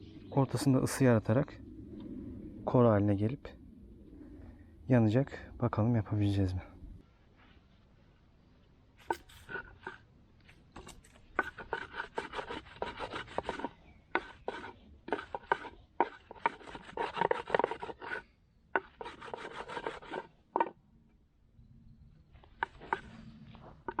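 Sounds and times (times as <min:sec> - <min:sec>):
wooden board scraping on board: 0:10.8 - 0:18.2, 0:18.8 - 0:20.8, 0:22.6 - 0:24.0.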